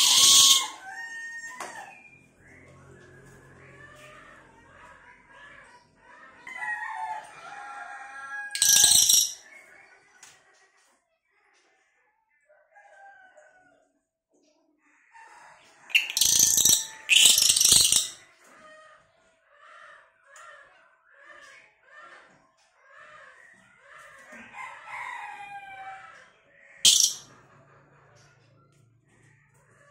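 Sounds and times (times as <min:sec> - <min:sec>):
loud harsh bird calls: 0:00.0 - 0:02.1, 0:08.5 - 0:09.7, 0:15.9 - 0:18.3, 0:25.8 - 0:27.3.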